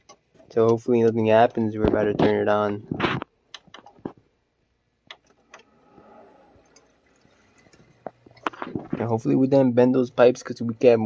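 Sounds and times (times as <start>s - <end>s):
computer fan whir: 5.1s - 11.0s.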